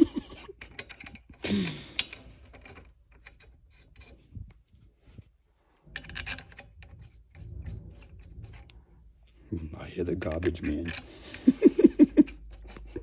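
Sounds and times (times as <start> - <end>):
hand tools clicking and knocking: 0.0 - 4.2, 10.1 - 13.0
metal scrape: 1.9 - 13.0.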